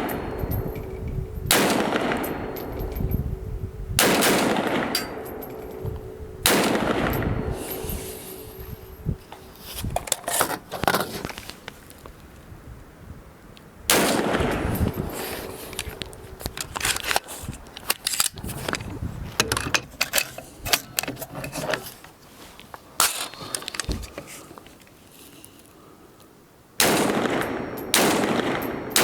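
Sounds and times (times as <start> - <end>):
rifle gunshots with echo: 0.0 - 3.2, 3.9 - 8.9, 13.9 - 16.0, 26.8 - 29.0.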